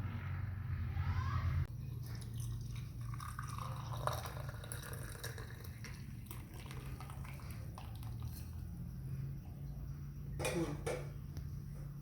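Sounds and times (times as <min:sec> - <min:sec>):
steady low hum: 0:00.0 - 0:12.0
tea trickling and dripping: 0:01.7 - 0:09.6.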